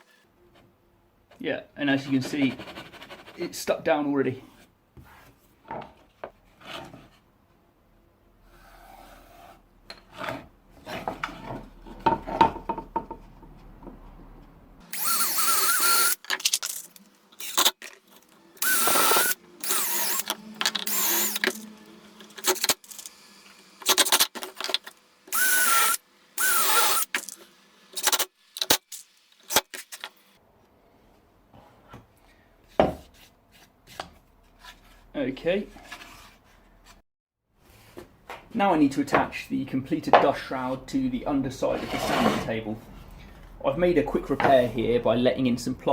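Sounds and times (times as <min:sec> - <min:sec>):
power drill drilling wood: 0:14.9 - 0:30.4.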